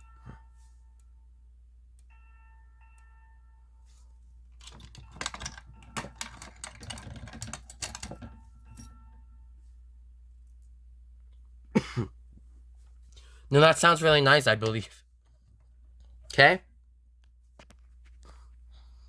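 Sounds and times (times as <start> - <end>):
rapid clicking and rattling: 4.6 - 8.4.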